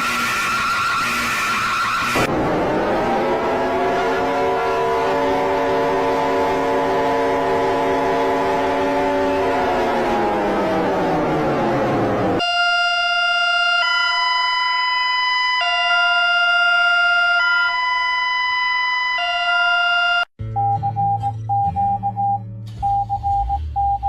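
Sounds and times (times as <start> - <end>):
falling wailing alarm: 0.0 - 20.3
beeping alarm tone: 12.4 - 24.0
electronic two-tone alarm signal: 12.4 - 24.0.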